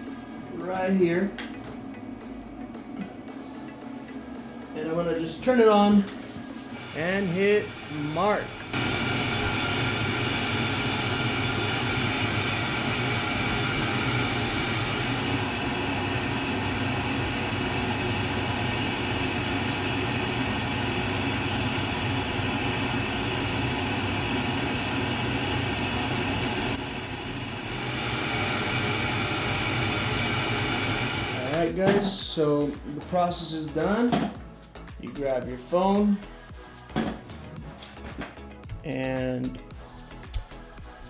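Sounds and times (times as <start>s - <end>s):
laser machine whirring hum: 6.7s - 31.6s.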